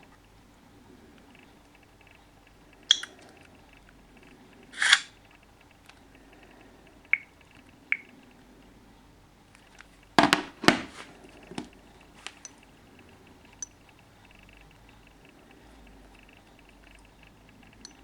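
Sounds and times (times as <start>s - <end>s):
loud knocks: 10.2s - 11.0s.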